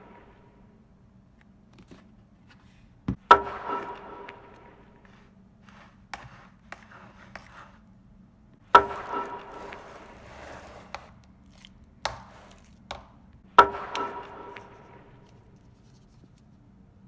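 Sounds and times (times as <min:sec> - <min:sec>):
sharp knocks on hard object: 0:00.0 - 0:00.7, 0:03.1 - 0:05.3, 0:08.7 - 0:11.1, 0:12.1 - 0:15.7.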